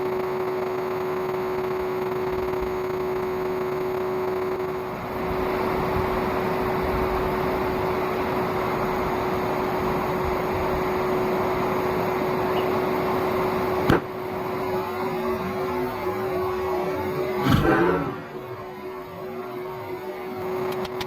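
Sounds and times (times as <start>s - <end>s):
vacuum cleaner motor whining: 0.0s - 21.0s
sharp click: 13.9s - 14.1s.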